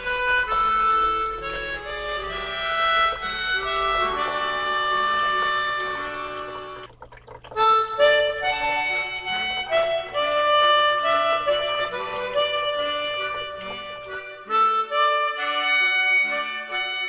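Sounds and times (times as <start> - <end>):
reedy melody background music: 0.0 - 6.6.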